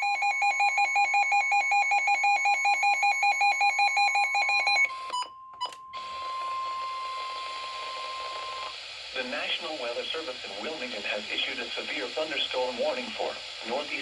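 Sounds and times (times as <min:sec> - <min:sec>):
rapid alarm beeps: 0:00.0 - 0:05.3
steady warning alarm tone: 0:00.0 - 0:14.0
radio hiss: 0:07.1 - 0:14.0.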